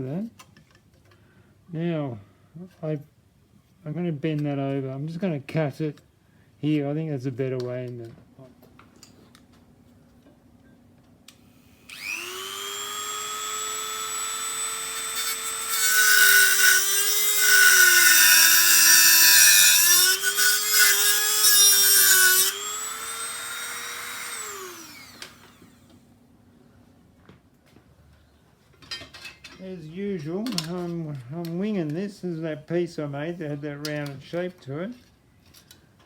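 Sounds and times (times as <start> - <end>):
electric tool cutting sheet metal: 11.6 - 25.8.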